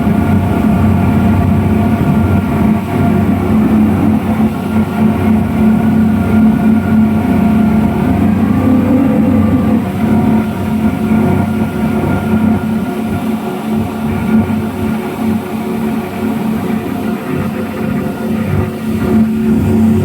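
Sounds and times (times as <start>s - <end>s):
speedboat engines droning: 0.0s - 20.0s.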